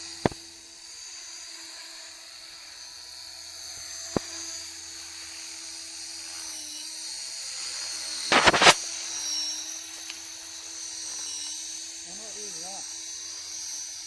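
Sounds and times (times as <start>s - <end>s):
sharp click: 8.3s - 8.8s.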